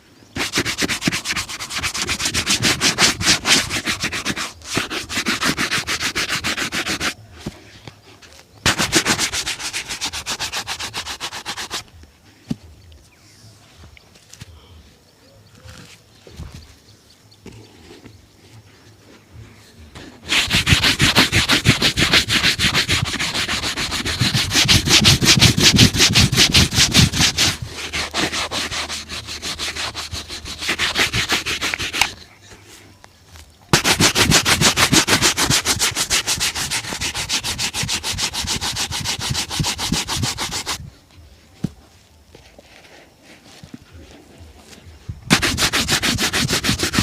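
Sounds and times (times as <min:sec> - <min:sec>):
buffing leather shoe: 0:00.4 - 0:07.6, 0:08.6 - 0:12.0, 0:20.0 - 0:32.2, 0:33.7 - 0:40.8, 0:45.3 - 0:47.0.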